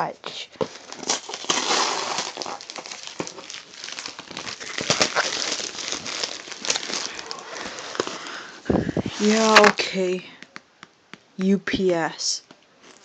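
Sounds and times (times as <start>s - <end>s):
packaging crumpling and rustling: 0.6s - 9.8s, 12.8s - 13.0s.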